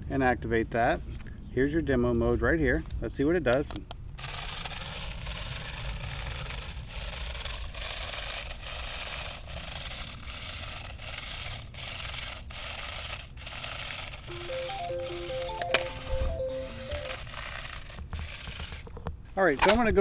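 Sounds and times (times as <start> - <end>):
toy car whirring rasping: 4.2 - 19.8
beeping electronic tune: 14.3 - 17.2.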